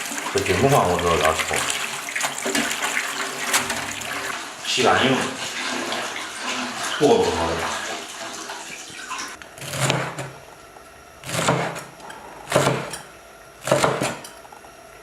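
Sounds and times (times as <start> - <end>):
cleaver chopping on cutting board: 9.6 - 10.3, 11.3 - 11.9, 12.5 - 13.0, 13.6 - 14.2.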